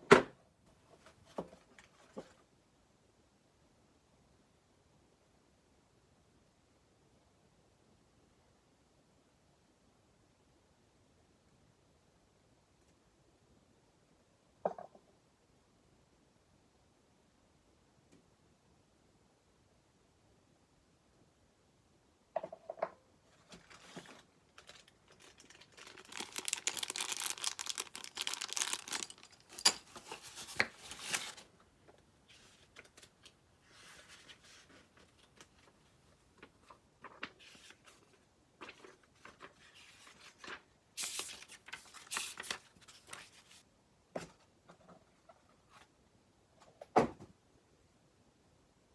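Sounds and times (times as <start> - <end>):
packaging crinkling and tearing: 23.6 - 31.5, 40.4 - 43.4
items knocking and clicking: 28.3 - 30.7.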